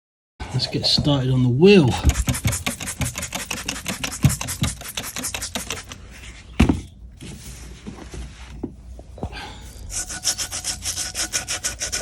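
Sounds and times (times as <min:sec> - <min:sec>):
scrubbing on a wheel rim: 0:01.9 - 0:06.4, 0:09.8 - 0:12.0.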